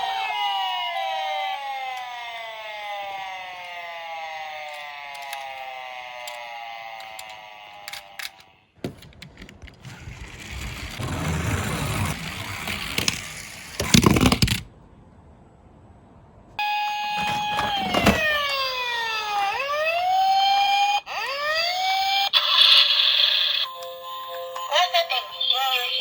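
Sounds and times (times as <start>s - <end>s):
toy siren wailing: 0.0s - 8.7s, 16.6s - 24.0s
toy cars rolling down a slope: 9.4s - 14.7s.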